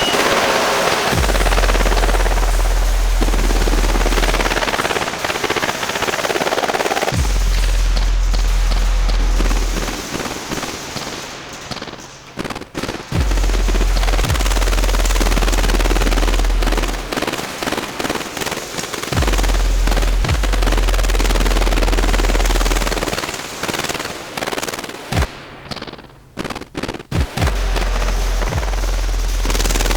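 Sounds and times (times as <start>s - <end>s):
fireworks crackling and popping: 0.0s - 29.9s
deep sustained bass note: 1.2s - 4.6s.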